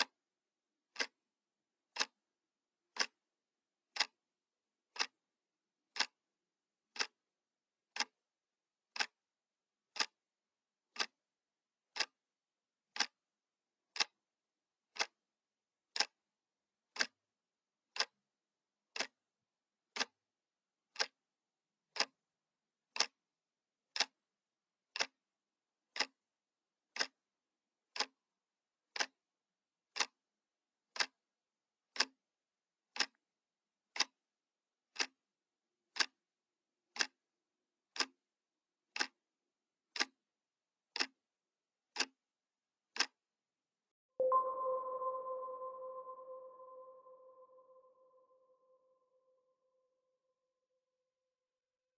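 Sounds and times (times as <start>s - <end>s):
clock ticking: 0.0s - 0.2s, 0.9s - 1.2s, 1.9s - 2.2s, 2.8s - 3.3s, 3.9s - 4.2s, 4.8s - 5.2s, 5.9s - 7.2s, 7.8s - 8.3s, 8.9s - 9.2s, 9.8s - 10.3s, 10.9s - 11.2s, 11.8s - 12.2s, 12.9s - 13.2s, 13.9s - 14.2s, 14.9s - 15.2s, 15.9s - 17.3s, 17.9s - 18.2s, 18.8s - 19.3s, 19.9s - 20.2s, 20.9s - 21.2s, 21.9s - 22.3s, 22.9s - 23.2s, 23.9s - 24.3s, 24.9s - 25.2s, 25.9s - 26.3s, 26.9s - 27.3s, 27.9s - 28.2s, 28.9s - 29.2s, 29.9s - 30.3s, 30.9s - 31.3s, 31.9s - 32.3s, 32.9s - 33.2s, 33.9s - 34.3s, 34.9s - 35.2s, 35.9s - 36.2s, 36.9s - 37.2s, 37.9s - 38.2s, 38.9s - 39.2s, 39.9s - 40.3s, 40.9s - 41.2s, 41.9s - 42.2s, 42.9s - 43.2s.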